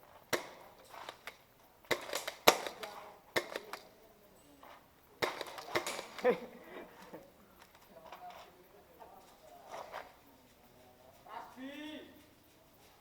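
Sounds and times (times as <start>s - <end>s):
airsoft gunfire: 0.3s - 3.9s, 5.2s - 6.4s
bbs striking obstacles: 0.3s - 3.9s, 5.2s - 6.5s.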